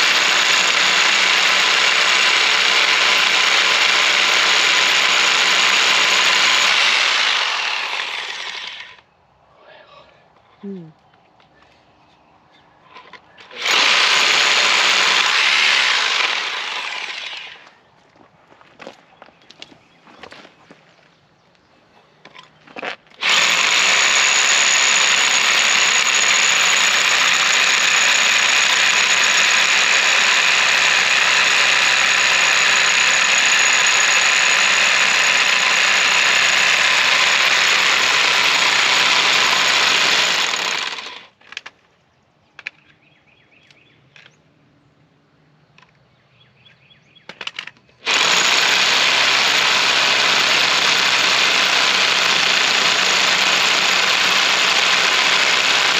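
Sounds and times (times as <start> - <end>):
hammer drill into concrete: 0.0 - 9.0, 13.4 - 17.7, 23.2 - 41.4, 47.4 - 55.9.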